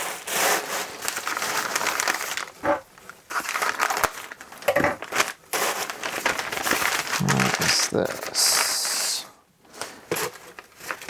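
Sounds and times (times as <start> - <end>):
packing material crinkling: 1.0 - 8.7.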